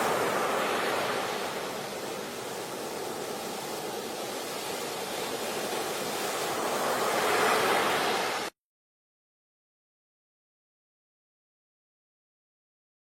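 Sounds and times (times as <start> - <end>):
water rushing: 0.0 - 8.6.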